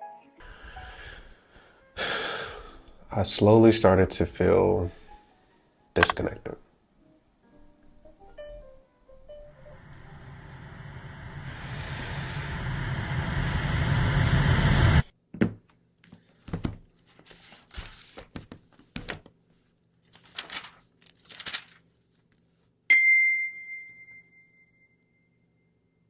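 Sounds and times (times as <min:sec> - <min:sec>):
rising whoosh: 0:09.4 - 0:15.1
bell-like ding: 0:22.9 - 0:25.4.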